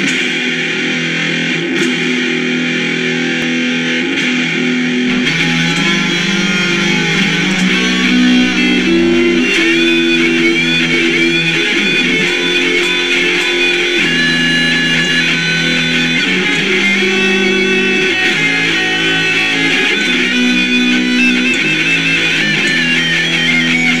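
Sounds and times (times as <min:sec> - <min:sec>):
electric guitar chords: 0:00.0 - 0:24.0
bass part: 0:05.1 - 0:19.6
wavering melodic line: 0:05.1 - 0:24.0.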